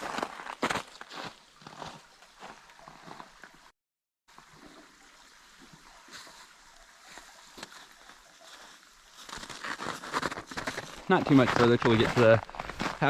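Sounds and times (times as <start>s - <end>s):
creek water trickling: 0.0s - 3.7s, 4.3s - 13.0s.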